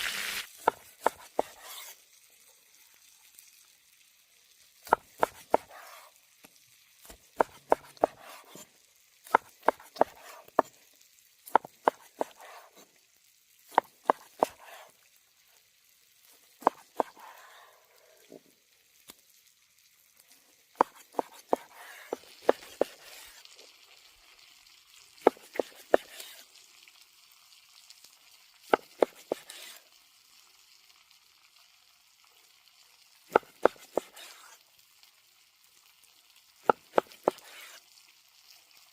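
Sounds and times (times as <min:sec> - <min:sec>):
food sizzling in a pan: 0:00.0 - 0:38.9
utensil scraping a pan: 0:00.6 - 0:02.0, 0:25.2 - 0:26.4, 0:28.7 - 0:29.8, 0:33.3 - 0:34.6, 0:36.7 - 0:37.8.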